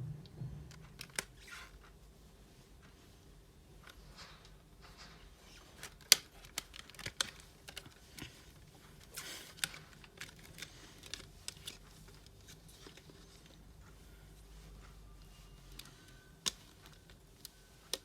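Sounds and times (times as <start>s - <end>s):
packaging rustle: 5.5s - 13.6s.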